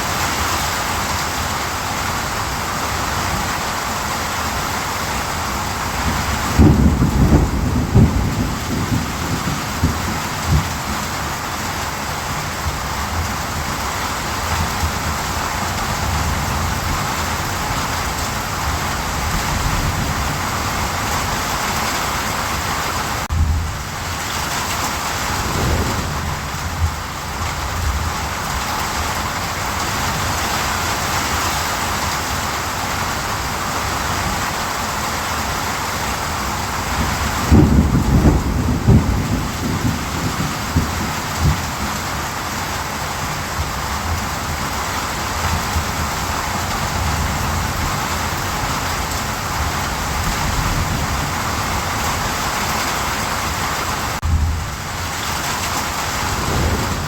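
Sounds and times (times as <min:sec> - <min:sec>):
heavy rainfall: 0:00.0 - 0:57.0
thunder rumble: 0:05.5 - 0:13.8, 0:23.3 - 0:30.3, 0:36.6 - 0:42.2, 0:54.2 - 0:57.0.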